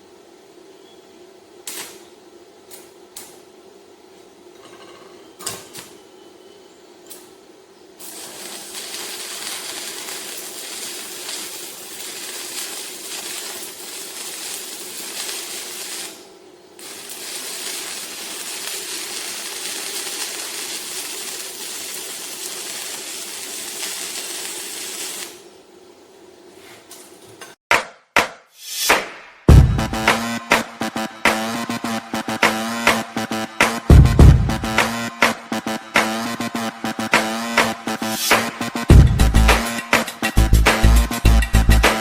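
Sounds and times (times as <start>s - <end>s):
welding arc crackling hiss: 1.6s - 4.2s, 7.0s - 27.2s, 28.6s - 42.0s
music: 29.0s - 42.0s.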